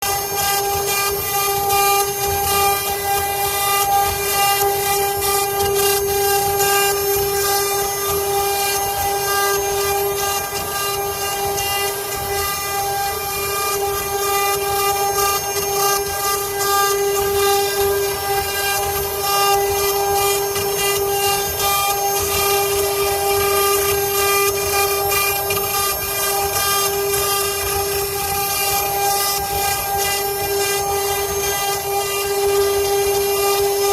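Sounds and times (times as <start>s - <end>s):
router spindle whine: 0.0s - 33.9s.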